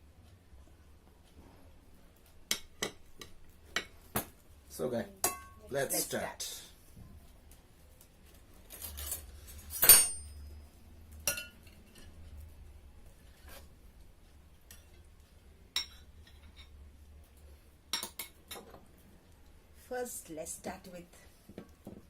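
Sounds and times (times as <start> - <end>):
cutlery clinking on dishes: 5.2 - 5.6, 8.7 - 10.6, 11.2 - 12.2, 15.7 - 16.8, 17.9 - 18.9.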